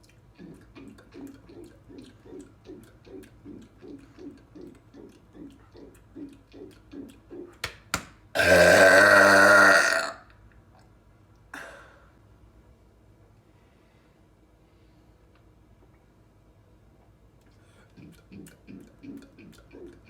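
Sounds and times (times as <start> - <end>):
man gulping soda: 8.4 - 10.2
loud long burp: 8.4 - 10.3.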